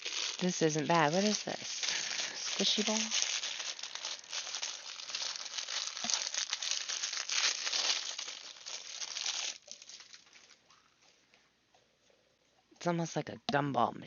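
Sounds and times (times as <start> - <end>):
plastic packaging crinkling: 0.0 - 11.1.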